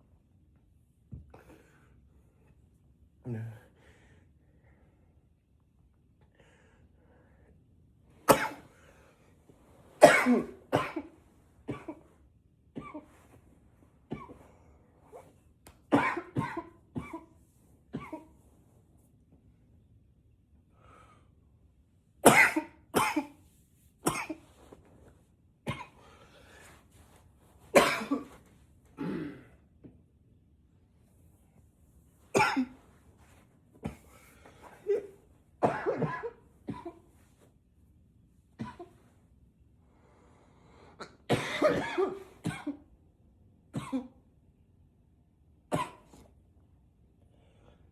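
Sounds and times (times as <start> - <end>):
man coughing: 8.3 - 8.6, 10.0 - 12.1, 15.9 - 17.3, 22.3 - 23.4, 24.1 - 24.4, 27.8 - 28.4, 29.0 - 29.6, 32.4 - 32.8, 33.9 - 37.1, 41.0 - 42.8.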